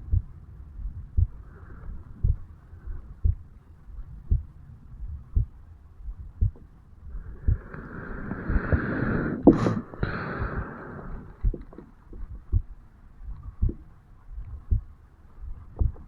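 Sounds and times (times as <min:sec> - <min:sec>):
heartbeat thumps: 0:00.0 - 0:16.0
rushing breath: 0:07.1 - 0:11.8.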